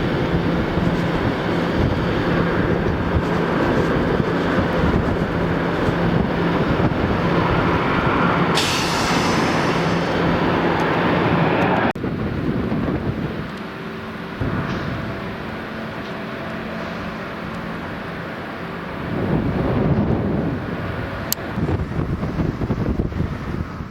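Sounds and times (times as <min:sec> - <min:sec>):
vehicle running with low hum: 0:00.0 - 0:23.9
hiss: 0:08.6 - 0:10.2.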